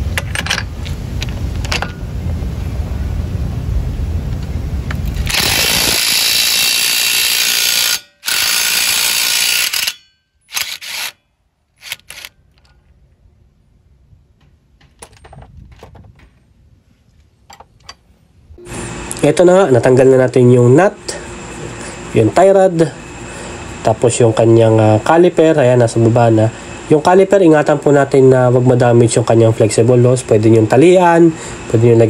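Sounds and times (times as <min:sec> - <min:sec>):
impact wrench hammering: 0:05.3 - 0:11.2.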